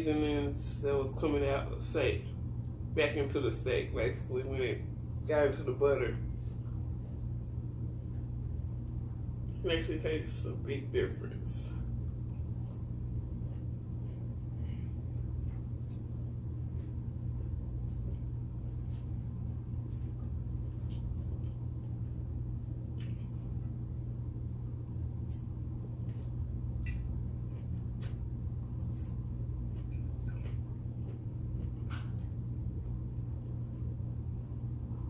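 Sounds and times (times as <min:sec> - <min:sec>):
steady low hum: 0:00.0 - 0:35.0
chewing clicks and smacks: 0:19.9 - 0:23.6, 0:24.5 - 0:34.0.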